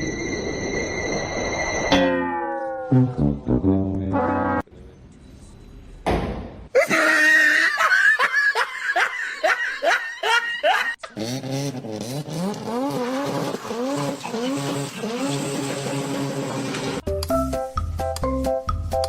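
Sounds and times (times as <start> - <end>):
high laughter: 6.8 - 11.0.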